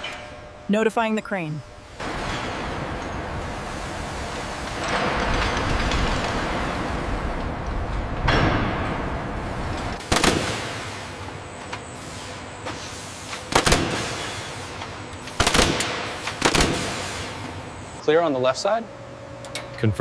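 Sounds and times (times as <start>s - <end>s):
industrial machinery rumble: 0.0s - 11.8s
sharp bangs: 8.2s - 11.0s.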